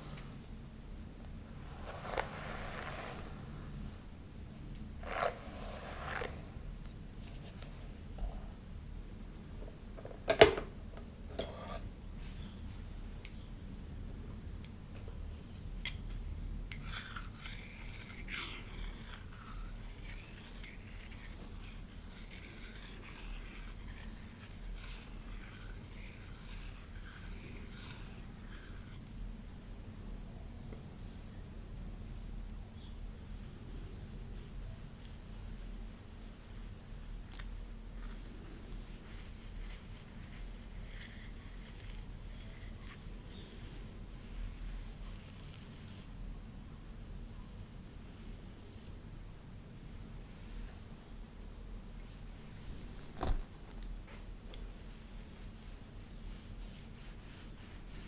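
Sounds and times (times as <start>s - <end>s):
hair rustling: 1.6s - 3.9s.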